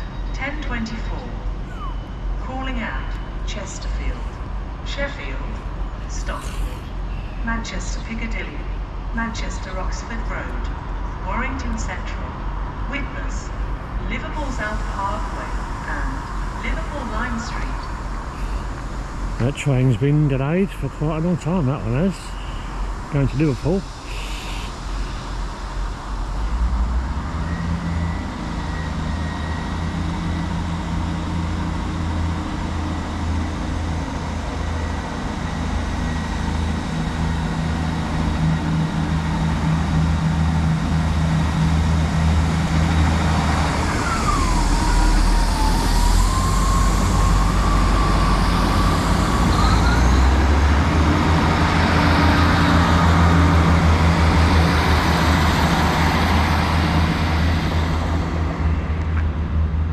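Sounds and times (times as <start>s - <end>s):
diesel train engine drone: 0.0s - 59.9s
high squeal: 1.6s - 2.2s, 42.7s - 53.1s.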